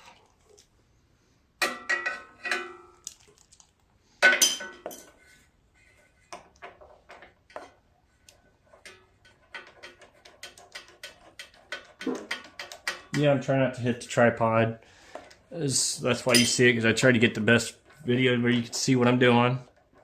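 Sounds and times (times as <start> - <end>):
metal hand tools clinking: 16.2 - 16.8.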